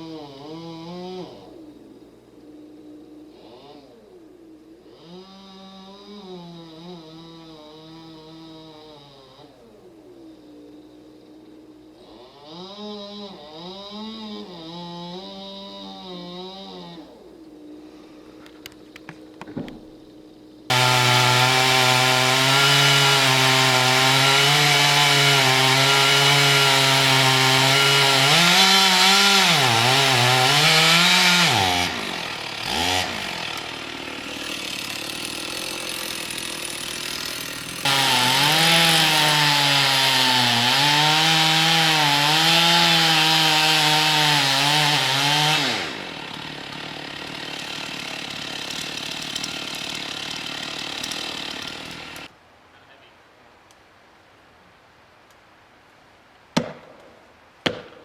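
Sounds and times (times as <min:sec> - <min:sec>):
chainsaw cutting wood: 0:00.0 - 0:01.6, 0:04.9 - 0:09.6, 0:12.0 - 0:17.2, 0:20.7 - 0:52.3, 0:56.6 - 0:58.0.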